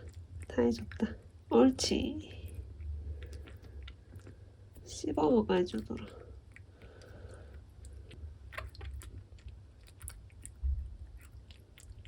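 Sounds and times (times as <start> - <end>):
cat chewing a treat: 2.3 - 4.9, 5.8 - 12.0.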